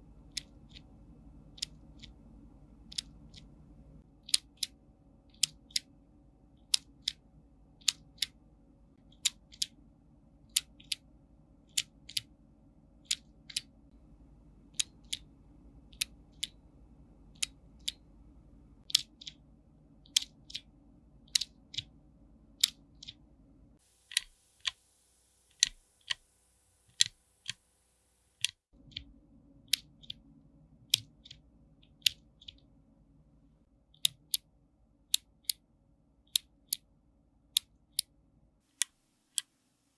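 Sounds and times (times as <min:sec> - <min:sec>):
mechanical keyboard clicks: 0:00.1 - 0:04.0.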